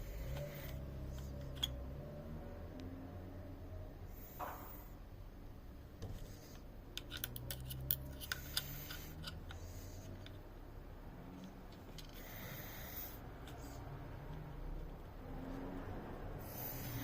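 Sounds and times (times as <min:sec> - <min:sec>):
metal parts clicking: 0:00.4 - 0:01.8, 0:07.0 - 0:10.4.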